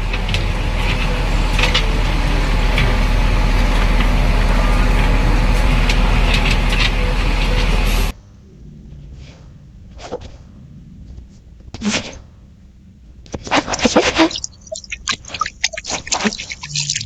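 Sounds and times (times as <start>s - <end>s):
cement mixer truck engine: 0.0s - 8.1s.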